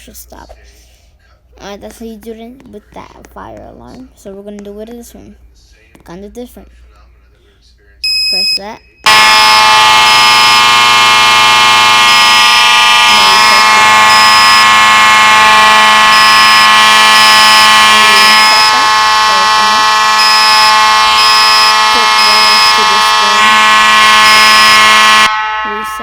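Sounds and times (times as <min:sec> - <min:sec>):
faint high beep: 0:08.0 - 0:10.6, 0:19.6 - 0:23.6
fire alarm horn buzzy tone: 0:08.0 - 0:26.0.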